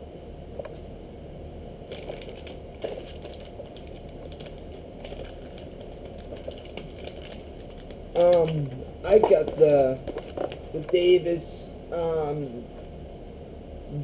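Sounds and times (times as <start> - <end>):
steady low hum: 0.0 - 14.0
plastic packaging crinkling: 1.9 - 11.0.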